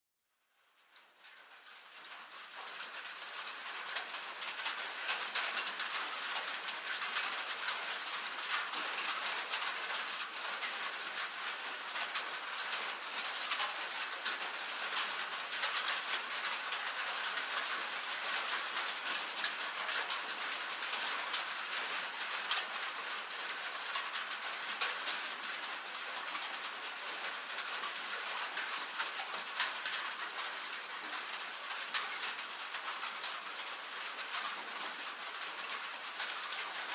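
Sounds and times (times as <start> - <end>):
rain on a metal roof: 0.4 - 36.9.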